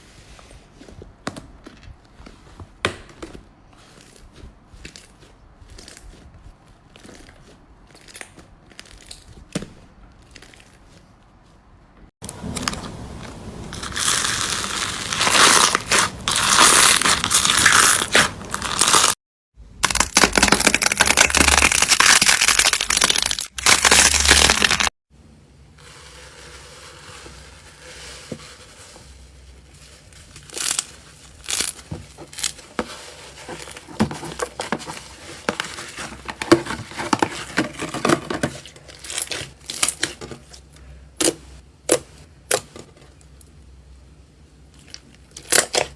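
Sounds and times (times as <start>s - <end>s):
slime crackling and popping: 19.8s - 24.9s, 30.4s - 32.5s.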